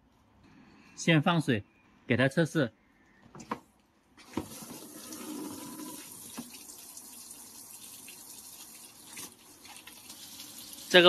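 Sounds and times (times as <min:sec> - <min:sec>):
water running into washing machine: 0:04.2 - 0:11.0.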